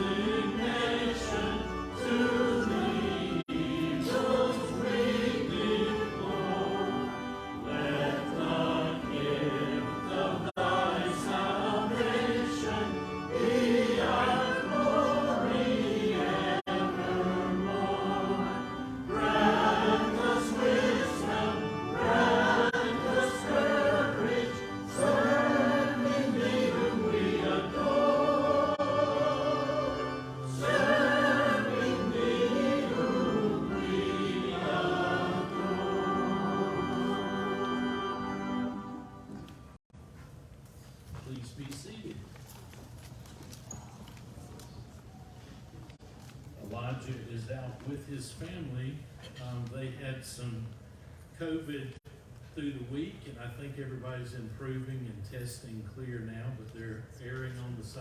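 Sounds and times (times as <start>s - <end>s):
choir singing: 0.0s - 39.6s.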